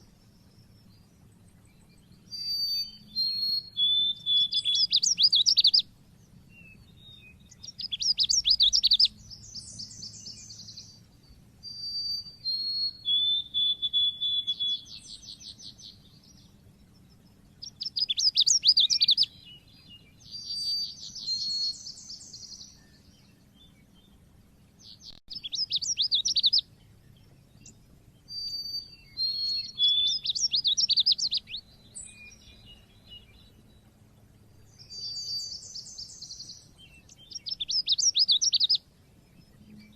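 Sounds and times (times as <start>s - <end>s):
bird chirping trills and whistles: 0.0s - 39.9s.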